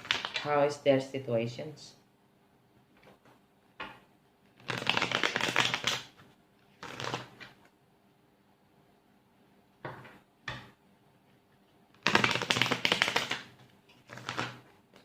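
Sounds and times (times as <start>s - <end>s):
cards flicking while shuffled: 0.0s - 0.4s, 4.6s - 6.2s, 6.8s - 7.6s, 12.0s - 15.0s
cards rustling: 6.8s - 7.6s, 12.1s - 15.0s.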